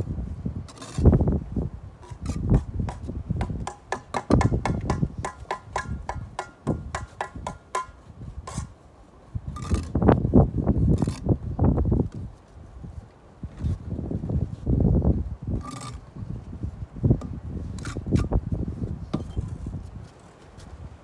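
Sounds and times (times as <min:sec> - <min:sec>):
trowel scraping mortar: 0:00.7 - 0:01.2, 0:02.0 - 0:05.8, 0:06.4 - 0:08.8, 0:09.5 - 0:10.1, 0:10.8 - 0:11.4, 0:15.6 - 0:16.1, 0:17.6 - 0:18.4
trowel tapping on bricks: 0:02.0 - 0:08.7.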